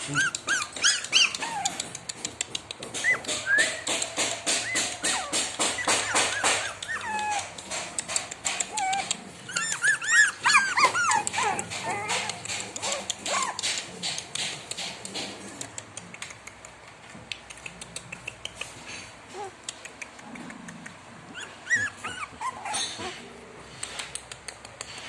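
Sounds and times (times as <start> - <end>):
puppies whimpering: 0.0 - 13.9, 21.3 - 23.4.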